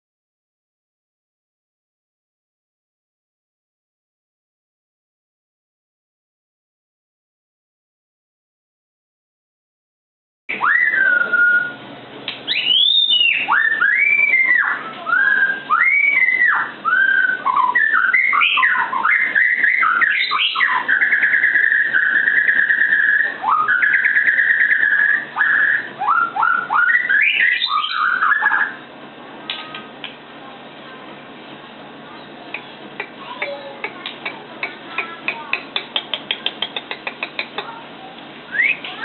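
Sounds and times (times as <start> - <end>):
bird whistling song: 10.5 - 11.8, 12.4 - 28.8, 38.5 - 39.0.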